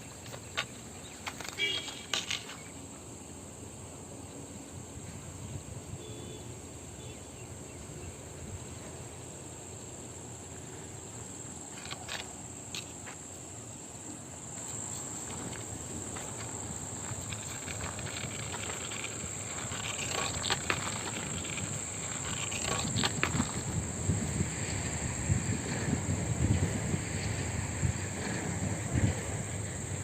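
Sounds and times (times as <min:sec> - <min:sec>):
insects droning: 0:00.0 - 0:30.0
wind rumble on microphone: 0:15.3 - 0:30.0.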